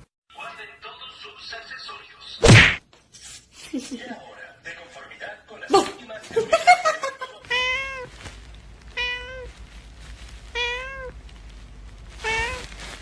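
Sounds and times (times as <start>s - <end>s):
cat meowing: 7.5s - 8.2s, 8.9s - 9.6s, 10.5s - 11.2s, 12.1s - 12.8s.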